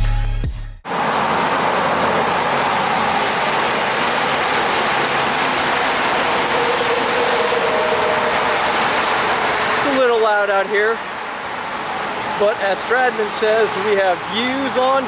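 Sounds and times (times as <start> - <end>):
steady rain falling: 1.3 - 10.5.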